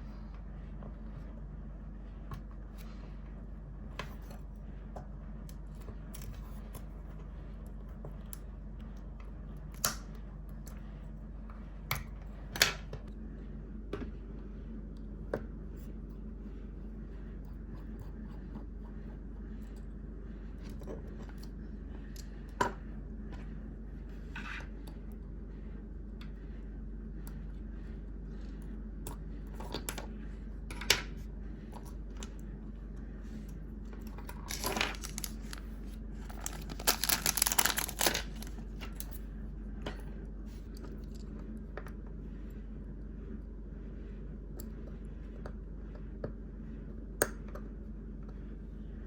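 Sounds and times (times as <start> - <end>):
electrical hum: 0.0 - 49.0
crackling scratching: 34.2 - 39.1.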